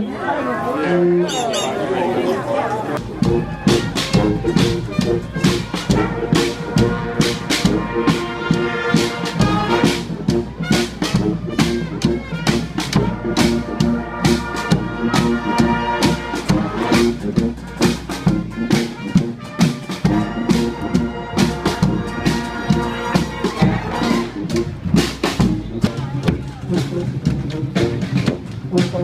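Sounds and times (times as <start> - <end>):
trumpets and trombones: 0.0 - 29.0
steady drum beat: 3.0 - 29.0.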